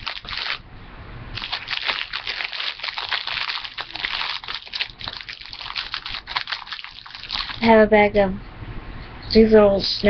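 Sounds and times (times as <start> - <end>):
plastic packaging crinkling: 0.0 - 0.6, 1.4 - 7.7.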